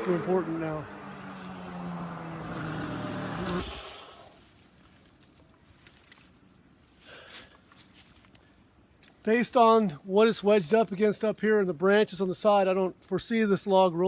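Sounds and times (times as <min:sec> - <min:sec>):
chainsaw idling: 0:01.3 - 0:04.5.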